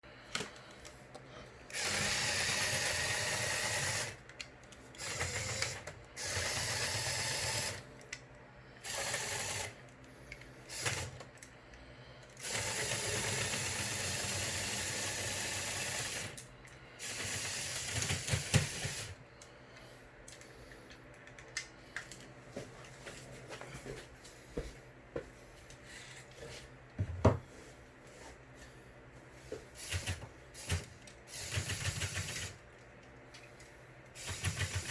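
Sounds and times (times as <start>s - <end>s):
small electric motors whirring: 1.7s - 4.2s, 5.0s - 7.8s, 8.8s - 9.8s, 10.6s - 11.3s, 12.4s - 16.4s, 17.0s - 19.2s, 29.8s - 32.6s, 34.2s - 34.9s.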